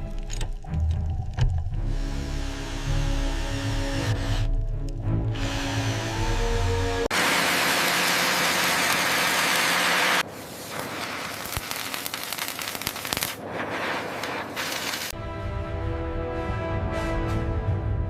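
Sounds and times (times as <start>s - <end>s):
crackling with pops: 10.7s - 15.2s.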